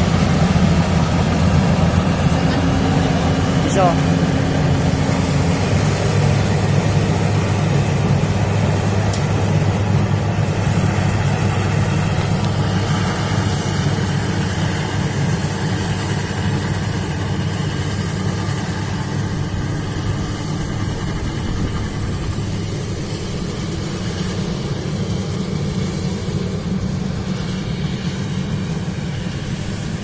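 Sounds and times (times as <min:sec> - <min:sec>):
combine harvester engine running: 0:00.0 - 0:30.0.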